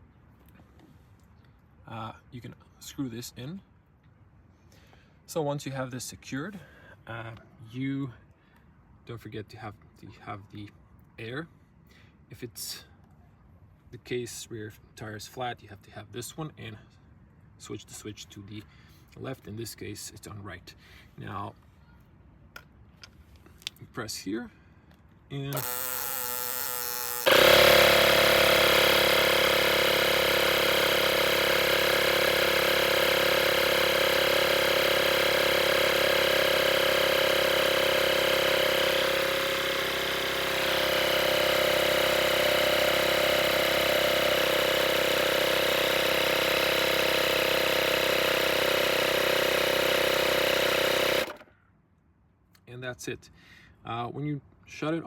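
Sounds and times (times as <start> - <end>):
electric air compressor buzzing: 25.5 - 51.5.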